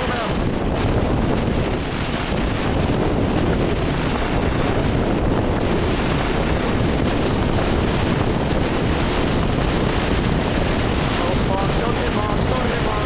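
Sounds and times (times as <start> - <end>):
strong wind on microphone: 0.0 - 13.0.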